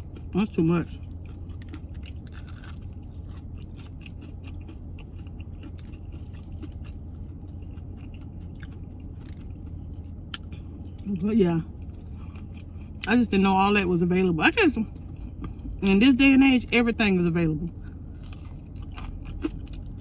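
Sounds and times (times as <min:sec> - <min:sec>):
chewing crispy chicken: 0:00.0 - 0:13.4, 0:14.8 - 0:16.0, 0:17.5 - 0:20.0
air conditioner hum: 0:00.0 - 0:20.0.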